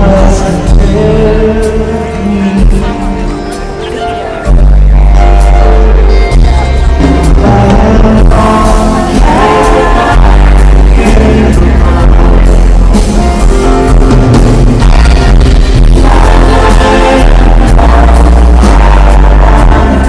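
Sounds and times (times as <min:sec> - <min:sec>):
live band playing loud music: 0:00.0 - 0:20.0
heavy bass drum: 0:04.5 - 0:20.0.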